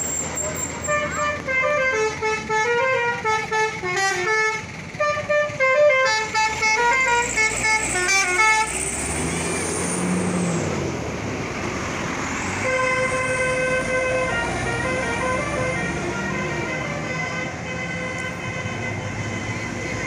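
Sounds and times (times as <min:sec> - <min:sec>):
bus horn playing a melody: 0:00.8 - 0:08.8, 0:12.6 - 0:20.0.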